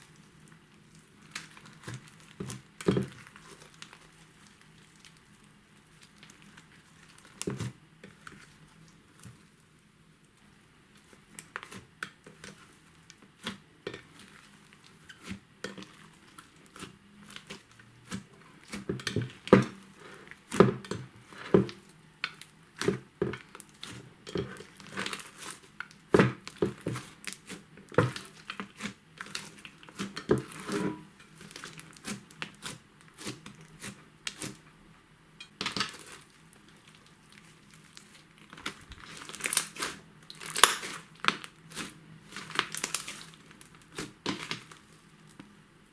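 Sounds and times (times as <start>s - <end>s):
slime crackling and snapping: 35.6s - 45.0s.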